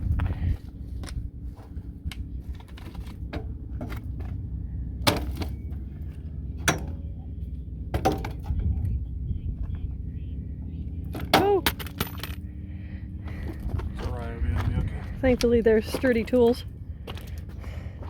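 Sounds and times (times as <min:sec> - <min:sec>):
low steady rumble: 0:00.0 - 0:18.0.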